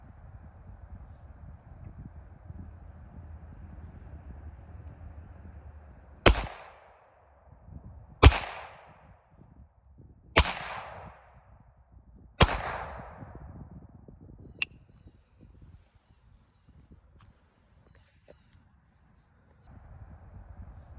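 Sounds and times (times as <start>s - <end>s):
pistol shots with echo: 6.3s - 7.2s, 8.2s - 9.2s, 10.4s - 11.5s, 12.4s - 13.4s.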